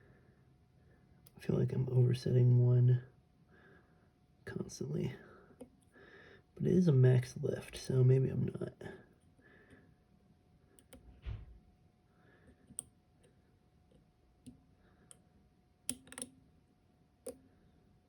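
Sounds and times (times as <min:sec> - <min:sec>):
lock pick clicking in lock: 0:15.9 - 0:16.4.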